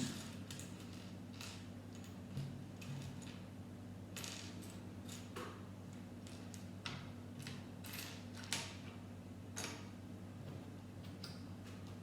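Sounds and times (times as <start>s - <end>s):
steady low hum: 0.0s - 6.3s.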